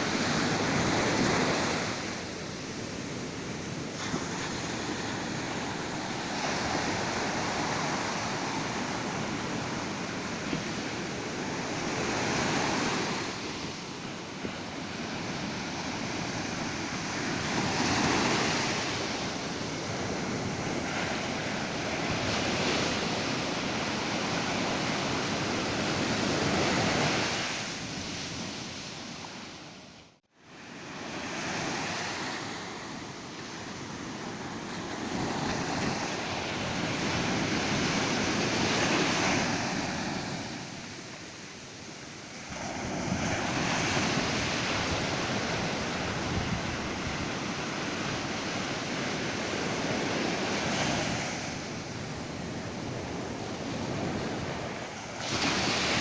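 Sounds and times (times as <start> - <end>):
surf breaking on beach: 42.3 - 56.0.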